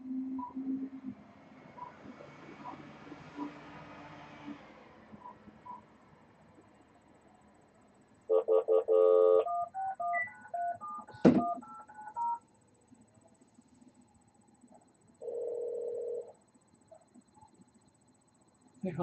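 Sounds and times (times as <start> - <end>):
steady phone tone: 8.3 - 12.4, 15.2 - 16.4
touch-tone dial tones: 8.3 - 12.4, 15.2 - 16.4.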